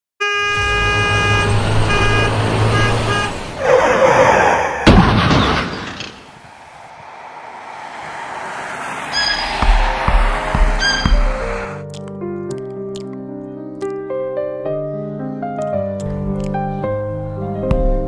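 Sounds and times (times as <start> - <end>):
horn blaring: 0.2 - 3.9, 9.0 - 11.8
loud rushing whoosh: 6.1 - 11.8.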